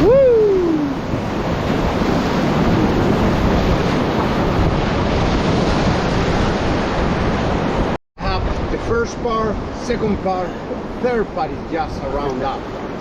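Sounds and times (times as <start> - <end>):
whitewater rushing: 0.0 - 13.0.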